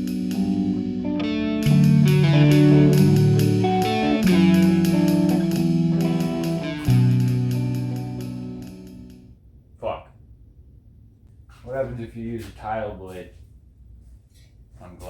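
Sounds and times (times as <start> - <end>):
steady drum beat: 0.0 - 9.1
electric guitar music: 0.0 - 9.3.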